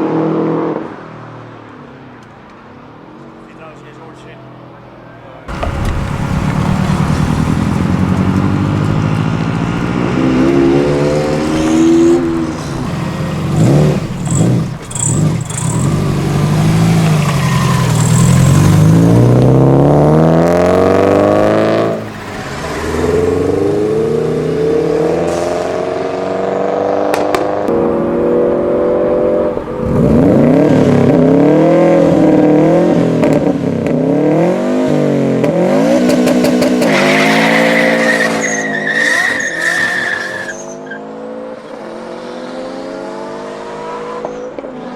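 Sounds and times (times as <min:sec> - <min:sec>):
car engine revving: 0:05.5 - 0:40.2.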